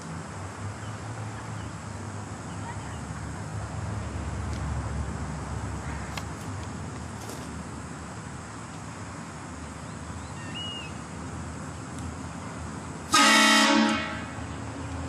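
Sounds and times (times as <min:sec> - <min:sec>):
street background noise: 0:00.0 - 0:15.0
train horn blast: 0:13.1 - 0:14.5.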